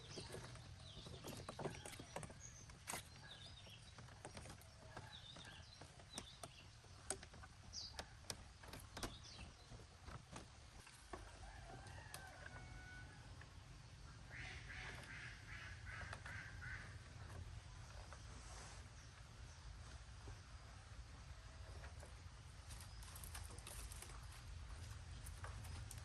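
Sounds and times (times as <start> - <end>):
light clicks and knocks: 0.0 - 12.6
faint bird chirps and clucks: 0.0 - 26.0.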